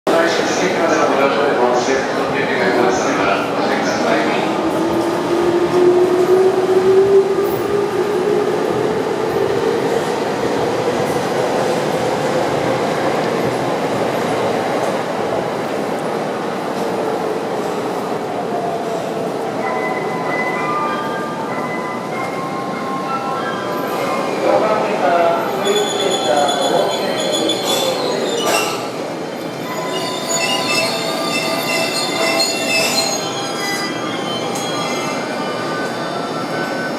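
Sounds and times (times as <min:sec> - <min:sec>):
train wheels and brakes squealing: 0:25.5 - 0:36.9.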